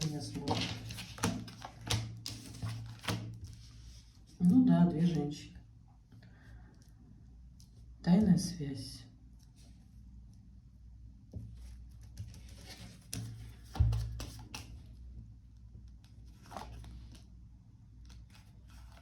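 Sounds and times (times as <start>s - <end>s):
cards rustling and clicking: 0.0s - 3.7s, 12.0s - 14.9s.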